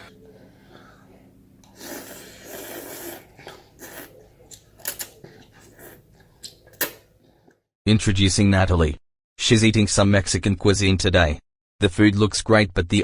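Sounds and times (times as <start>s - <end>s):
noodles slurped: 1.6s - 6.6s
wet mouth chewing: 1.6s - 6.6s.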